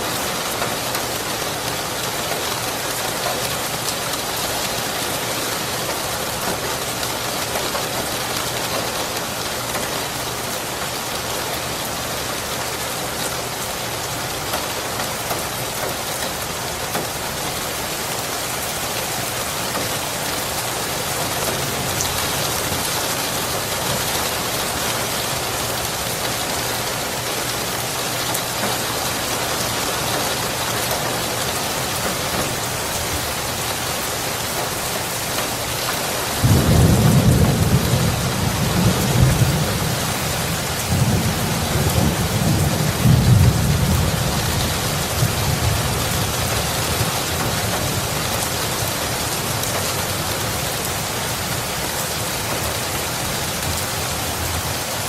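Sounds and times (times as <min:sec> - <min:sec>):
heavy rain: 0:00.0 - 0:55.0
thunder rumbling: 0:36.4 - 0:48.2.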